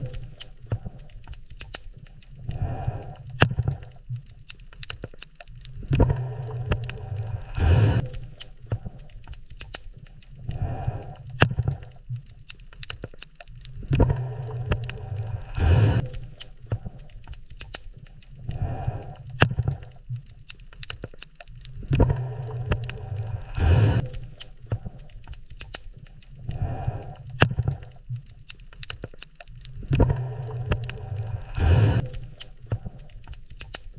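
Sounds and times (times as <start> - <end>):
low underwater rumble: 0.0 - 4.5, 5.6 - 12.5, 13.5 - 20.5, 21.5 - 28.5, 29.5 - 33.6
low steady hum: 0.0 - 4.6, 5.4 - 12.5, 13.4 - 20.7, 21.3 - 33.9
underwater shrimp clicks: 0.0 - 33.9
noisy rushes: 30.8 - 32.0.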